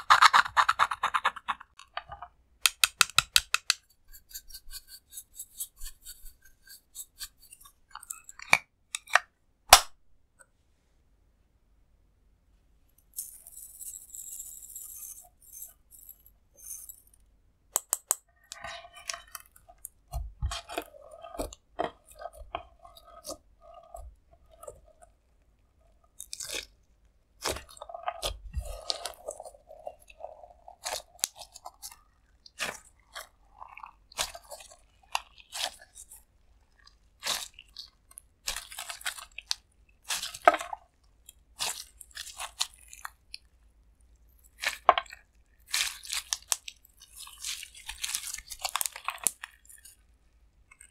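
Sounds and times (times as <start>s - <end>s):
slime squelching and clicking: 26.1s - 36.2s, 36.8s - 43.5s, 44.5s - 50.0s.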